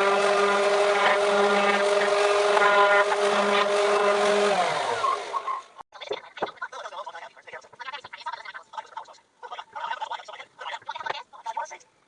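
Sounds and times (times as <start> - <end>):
electric power tool winding down: 0.0 - 5.7.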